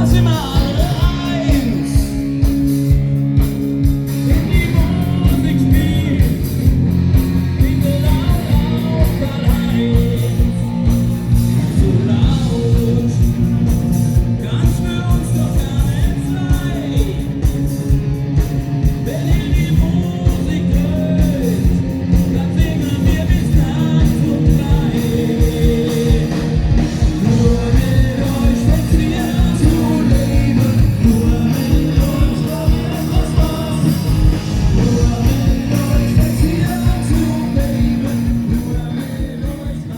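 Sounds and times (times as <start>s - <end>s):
guitar: 0.0s - 39.9s
live rock band playing: 0.0s - 39.9s
steady drum beat: 0.0s - 39.9s
person singing: 7.5s - 17.9s, 18.8s - 39.9s.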